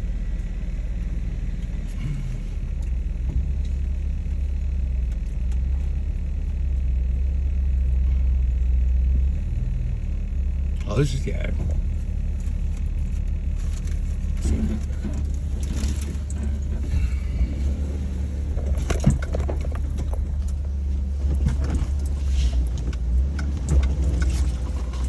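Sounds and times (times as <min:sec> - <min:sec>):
vehicle engine rumble: 0:00.0 - 0:25.0
body knocks and rattles: 0:11.6 - 0:25.0.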